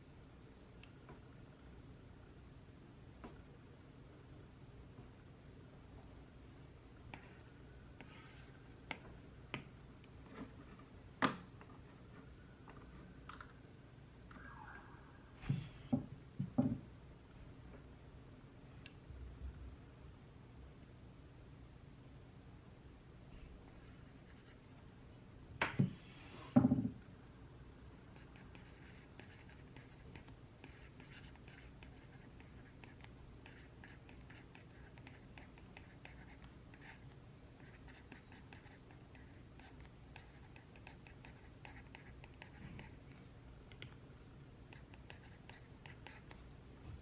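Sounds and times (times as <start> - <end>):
faint room hum: 0.0 - 47.0
knocks of desk objects: 15.5 - 16.8, 26.6 - 27.0
pen scratching on paper: 28.2 - 37.0, 37.6 - 43.0, 44.7 - 46.4.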